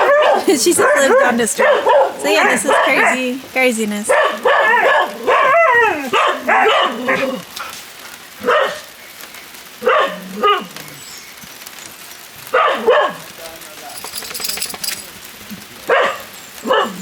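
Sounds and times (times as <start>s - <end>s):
dogs barking: 0.0s - 3.4s, 4.1s - 7.6s, 8.4s - 9.0s, 9.8s - 10.7s, 12.4s - 13.4s, 15.8s - 17.0s
steady rain falling: 0.0s - 17.0s.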